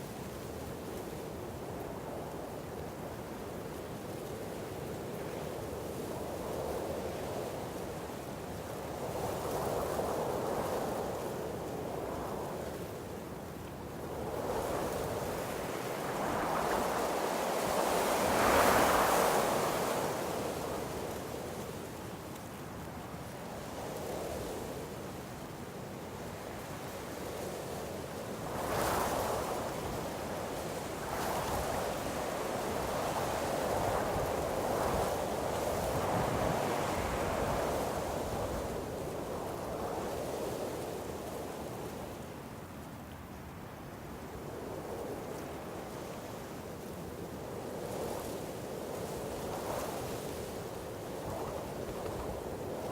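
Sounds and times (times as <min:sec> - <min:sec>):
wind through trees: 0:00.0 - 0:52.9
wind blowing through trees: 0:26.8 - 0:52.9.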